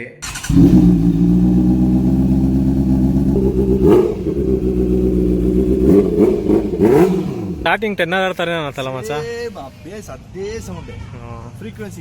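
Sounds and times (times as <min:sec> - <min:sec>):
motorcycle engine idling: 0:00.2 - 0:07.8.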